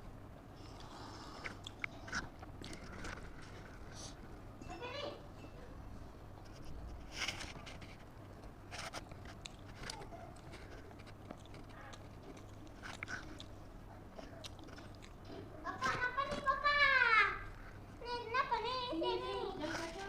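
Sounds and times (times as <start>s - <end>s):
person chewing and biting: 0.7s - 3.9s, 8.4s - 15.3s
mouth clicks and smacks: 1.4s - 3.3s.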